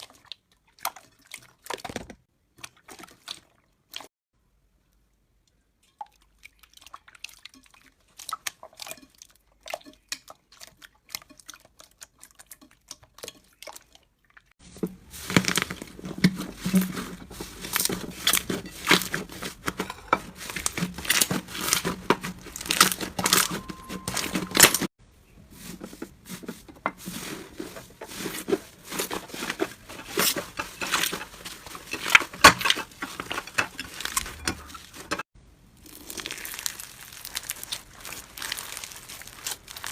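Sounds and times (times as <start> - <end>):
crunchy slime crackling: 20.3 - 23.5, 35.7 - 39.9.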